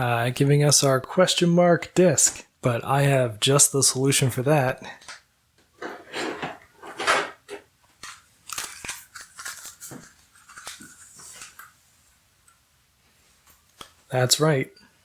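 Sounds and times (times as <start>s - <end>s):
crinkling rustles: 6.1s - 11.9s.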